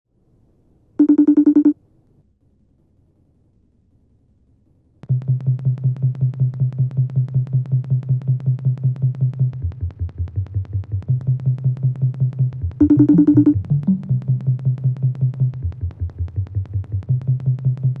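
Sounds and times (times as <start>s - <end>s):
fast electronic ticks: 1.0s - 1.8s, 5.0s - 18.0s
pulsing synth bass: 5.1s - 18.0s.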